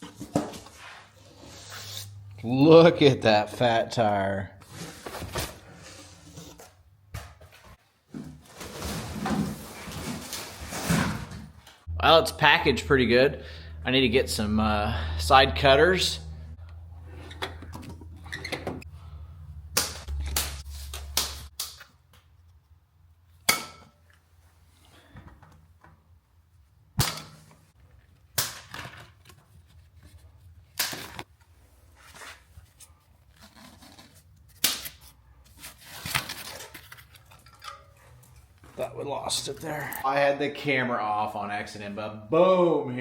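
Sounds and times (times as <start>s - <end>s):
low hum: 11.9s - 21.5s.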